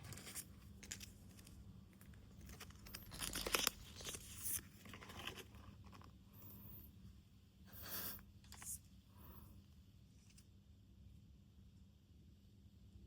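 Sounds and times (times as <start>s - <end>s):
packaging rustling and tearing: 2.3s - 6.0s.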